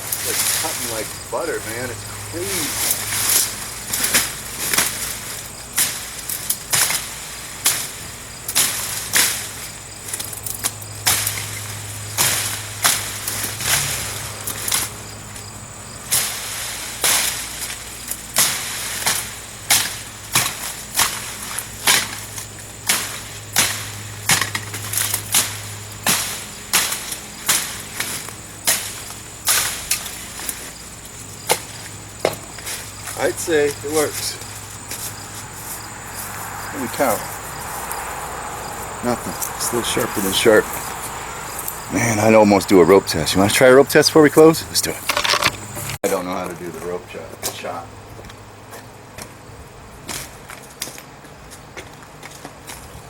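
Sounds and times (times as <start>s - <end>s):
stalks crackling and swishing: 0.0s - 47.8s
knife chopping through stalks: 16.1s - 30.6s.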